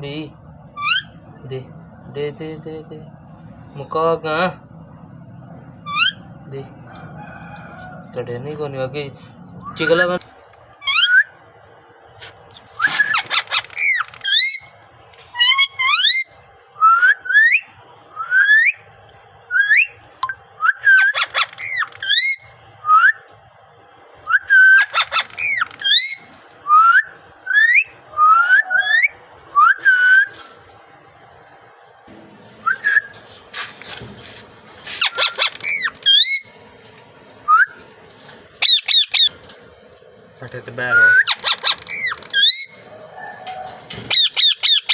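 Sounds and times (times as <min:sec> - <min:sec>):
parrot squawks: 0:00.8 - 0:01.2, 0:12.9 - 0:14.7, 0:15.3 - 0:16.3, 0:20.8 - 0:22.4, 0:24.5 - 0:26.2, 0:27.5 - 0:29.1, 0:34.9 - 0:36.5, 0:38.6 - 0:39.3, 0:41.0 - 0:43.4, 0:44.1 - 0:44.9
parrot whistling: 0:10.8 - 0:11.4, 0:15.3 - 0:18.8, 0:19.5 - 0:20.0, 0:20.6 - 0:23.2, 0:24.3 - 0:30.3, 0:32.6 - 0:33.1.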